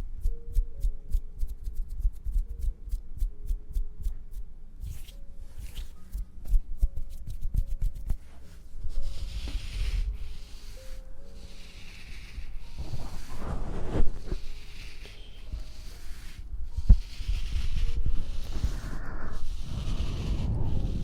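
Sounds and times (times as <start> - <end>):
soft hissing swish: 4.8 - 6.6, 8.2 - 21.0.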